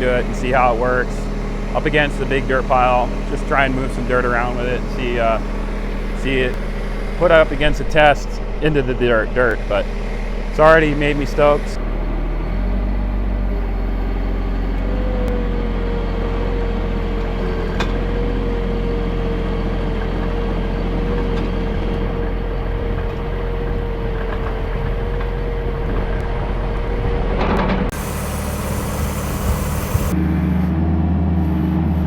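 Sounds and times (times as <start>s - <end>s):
thin steady whine: 0.0s - 11.9s, 27.9s - 30.8s
loader engine running: 0.0s - 32.0s.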